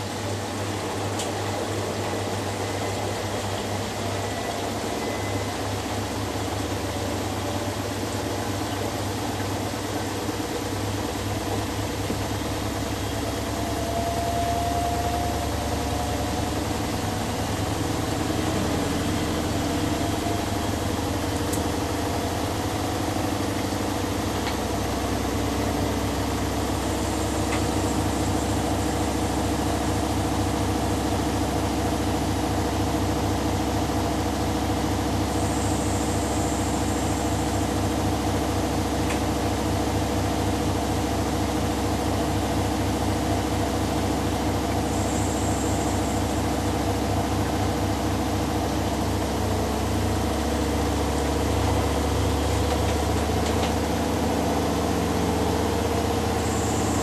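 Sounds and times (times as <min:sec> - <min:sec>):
faint high whine: 0:00.0 - 0:07.8
washing machine spin hum: 0:00.0 - 0:57.0.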